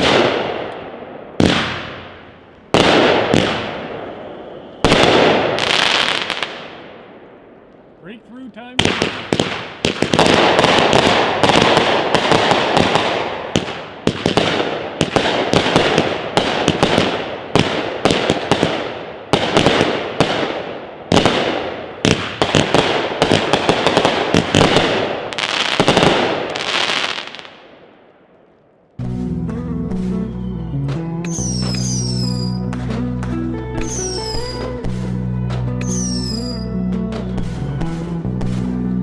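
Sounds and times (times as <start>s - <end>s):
firework shots and breaks: 0.0s - 7.0s, 8.8s - 27.8s
background music: 29.0s - 39.0s.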